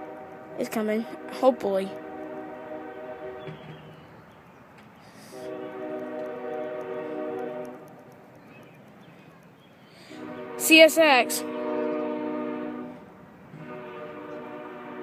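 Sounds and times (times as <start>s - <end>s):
locomotive air horn blasts: 0.0s - 4.0s, 5.1s - 8.0s, 10.1s - 15.0s.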